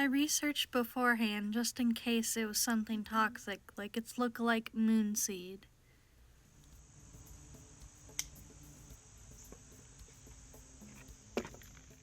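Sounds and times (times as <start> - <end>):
insects chirring: 6.4 - 12.0.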